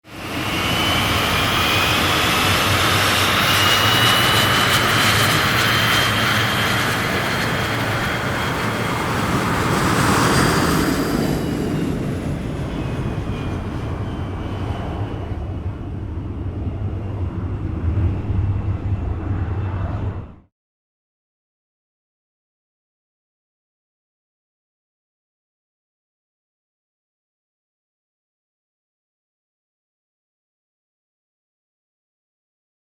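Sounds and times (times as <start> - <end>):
airplane engine taking off: 0.0 - 20.5.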